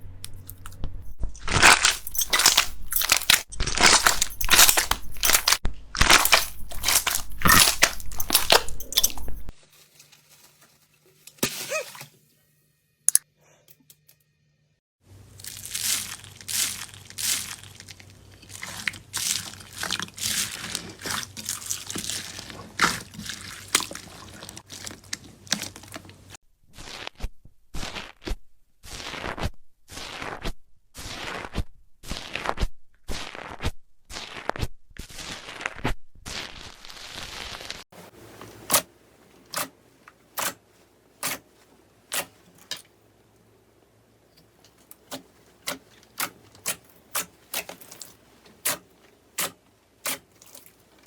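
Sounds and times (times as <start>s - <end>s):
slime crackling and popping: 1.4s - 8.7s, 32.1s - 37.8s
wet slime squishes: 1.4s - 9.5s, 15.4s - 27.1s.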